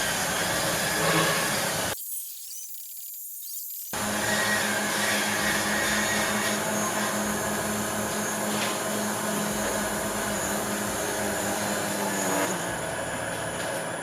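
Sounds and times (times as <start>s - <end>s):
drone propellers whirring: 3.9s - 12.9s.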